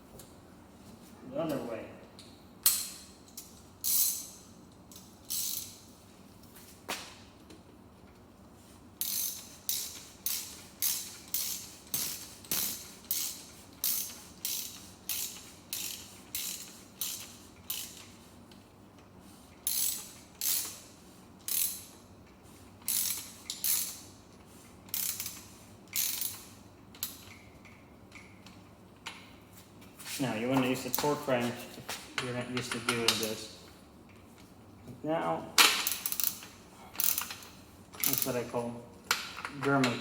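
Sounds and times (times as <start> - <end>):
socket ratchet clicking: 2.6 - 4.3, 4.9 - 5.8, 9.0 - 18.1, 19.7 - 20.8, 21.5 - 21.9, 22.9 - 24.0, 24.9 - 28.3, 35.6 - 38.3.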